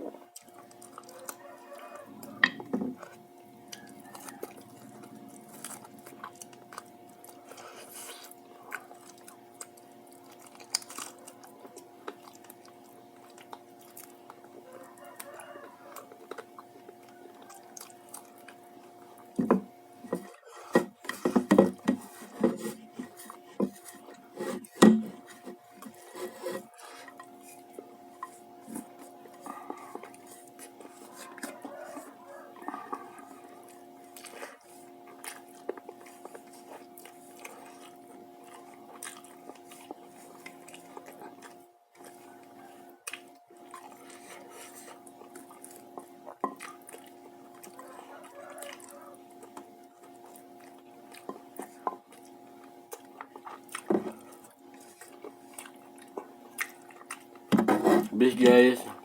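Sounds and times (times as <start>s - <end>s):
quiet chewing: 0.0s - 59.0s
rustling handling of food: 0.4s - 46.2s.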